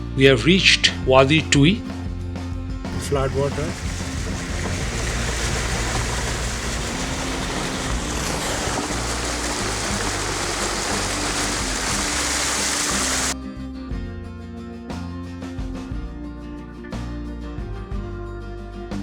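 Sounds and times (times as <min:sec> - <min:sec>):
rushing floodwater: 0:02.9 - 0:13.4.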